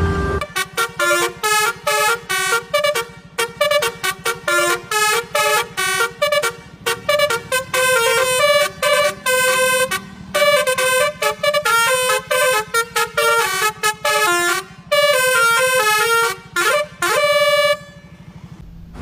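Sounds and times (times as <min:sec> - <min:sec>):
multi-tone air horn melody: 0:00.0 - 0:18.3
steady low rumble: 0:18.6 - 0:19.0.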